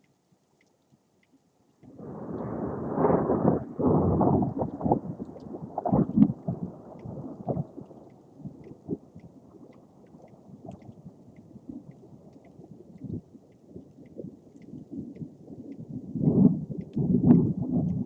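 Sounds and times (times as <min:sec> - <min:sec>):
faint steady hiss: 0:00.0 - 0:18.0
thunder rumbling: 0:01.9 - 0:07.8, 0:16.1 - 0:18.0.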